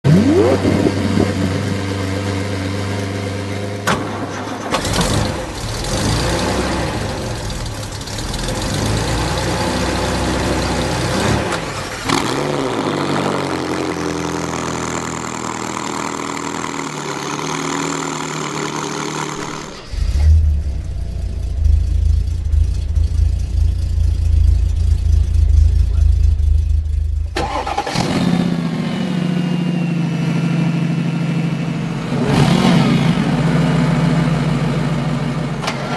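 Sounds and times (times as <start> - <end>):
loud car exhausts revving: 0.0 - 3.9, 4.8 - 35.6
deep low rumble: 0.1 - 2.4, 19.9 - 27.4.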